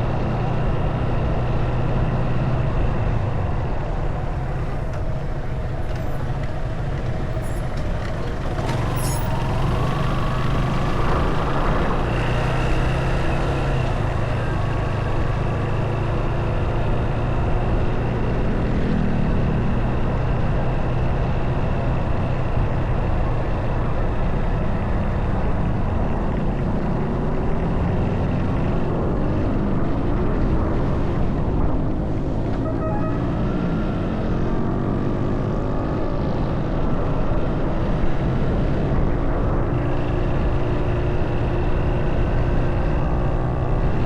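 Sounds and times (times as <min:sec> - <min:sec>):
road noise: 0:00.0 - 0:44.0
motorcycle engine running: 0:00.4 - 0:33.3.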